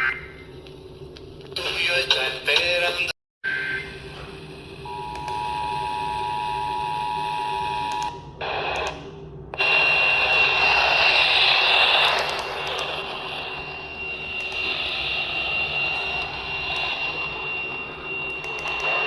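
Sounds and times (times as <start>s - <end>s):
hissy broadcast with high whistle: 9.6s - 19.0s.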